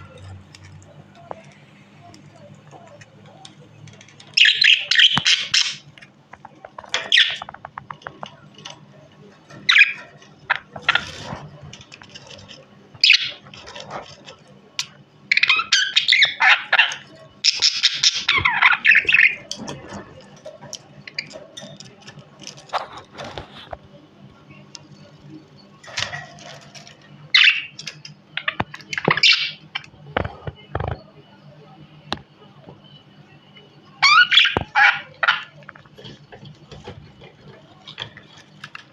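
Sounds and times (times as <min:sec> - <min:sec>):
budgerigar chirping: 0:04.4 - 0:05.9, 0:34.0 - 0:35.6.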